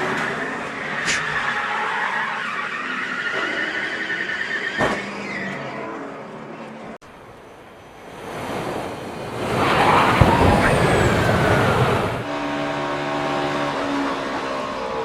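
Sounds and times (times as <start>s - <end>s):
racing car engines running: 5.2s - 15.0s
car crash: 9.3s - 12.3s.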